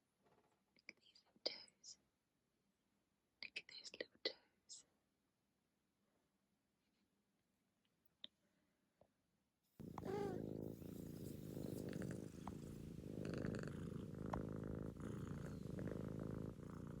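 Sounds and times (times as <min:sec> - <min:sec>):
kitten purring: 0:09.8 - 0:17.0.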